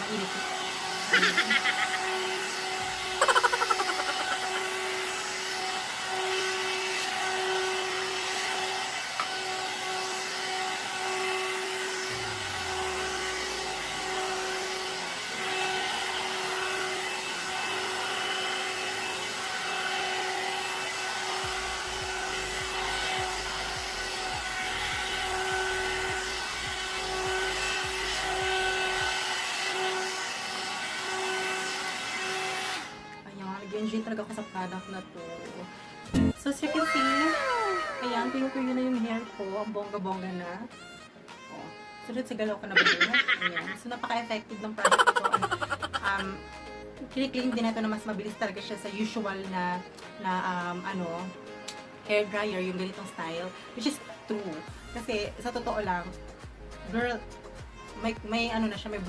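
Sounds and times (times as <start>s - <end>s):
hair dryer fan whir: 0.0s - 59.0s.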